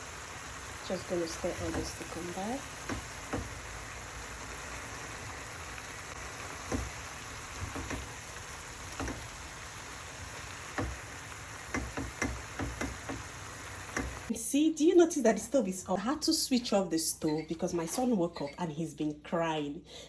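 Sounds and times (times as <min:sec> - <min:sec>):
kitchen extractor hood running: 0:00.0 - 0:14.3
sauce simmering in a pan: 0:00.0 - 0:14.3
spoon knocking against pan: 0:02.8 - 0:03.6, 0:06.6 - 0:07.0, 0:07.6 - 0:08.1, 0:09.0 - 0:09.3, 0:10.7 - 0:11.0, 0:11.6 - 0:14.2.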